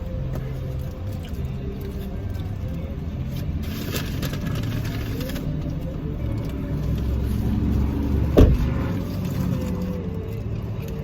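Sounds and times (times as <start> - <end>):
car engine idling: 0.0 - 11.0
faint music: 0.0 - 11.0
dull thump: 8.4 - 8.9.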